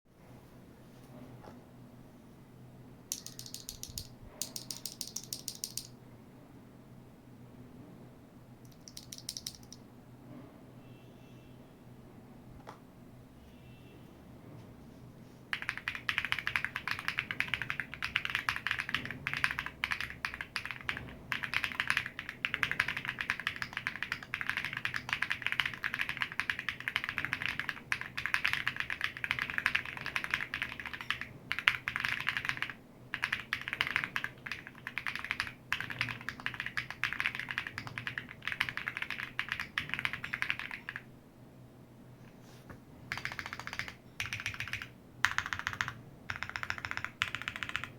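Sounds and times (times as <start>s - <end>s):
mechanical keyboard typing: 3.1s - 5.9s, 8.7s - 9.8s, 15.5s - 41.1s, 43.1s - 47.9s.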